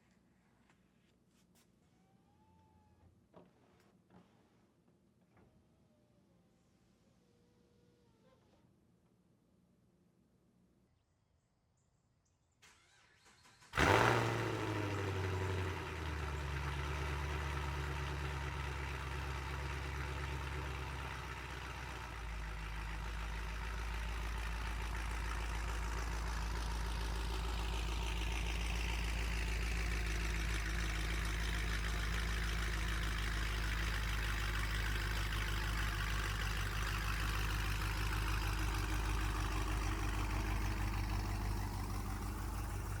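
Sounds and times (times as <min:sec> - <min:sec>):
car engine starting and idling: 0:12.6 - 0:43.0.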